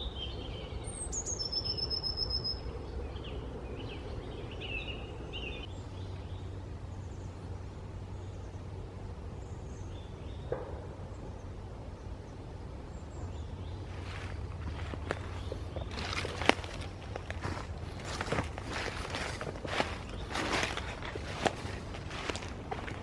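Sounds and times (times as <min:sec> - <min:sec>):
bird chirps: 0:00.0 - 0:07.2
low rumble of wind: 0:00.0 - 0:23.0.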